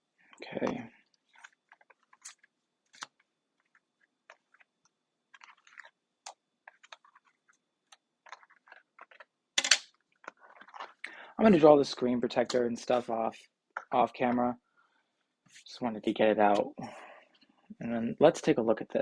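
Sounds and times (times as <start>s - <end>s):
packaging rustle: 1.2s - 6.0s, 6.6s - 9.4s, 10.0s - 11.1s
hands handling phone packaging: 1.2s - 11.0s.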